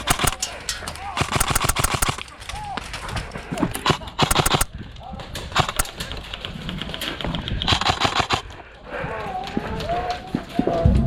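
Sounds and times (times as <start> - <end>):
airsoft guns firing: 0.0 - 2.5, 3.6 - 4.7, 5.6 - 6.1, 7.7 - 8.5.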